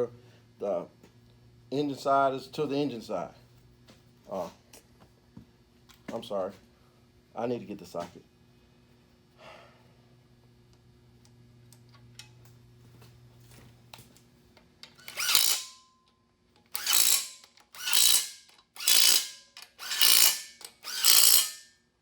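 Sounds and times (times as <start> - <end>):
loud socket tool strokes: 14.9 - 15.8, 16.6 - 21.8.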